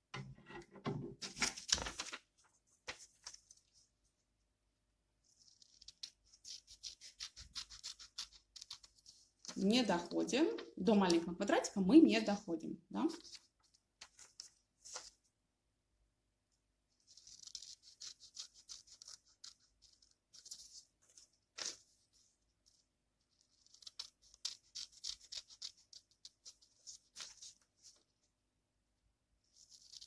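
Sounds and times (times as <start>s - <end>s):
scissors cutting paper: 5.4s - 9.1s, 17.0s - 20.7s, 23.4s - 27.6s.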